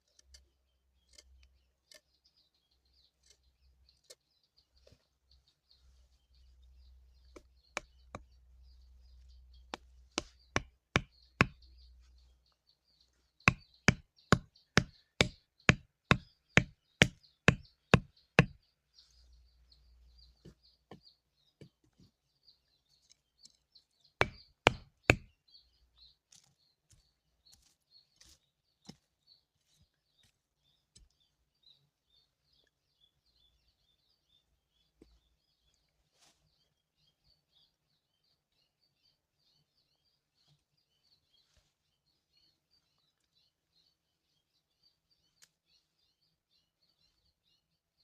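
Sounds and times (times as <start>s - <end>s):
sharp knocking on wood: 9.7s - 11.6s, 13.5s - 18.6s, 24.2s - 25.3s.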